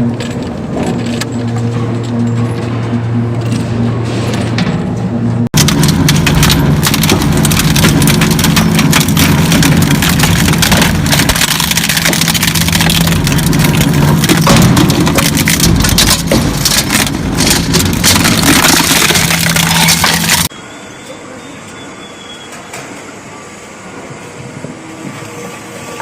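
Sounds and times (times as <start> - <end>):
crushing machine motor hum: 0.0 - 20.5
material cracking and crunching: 5.5 - 20.5.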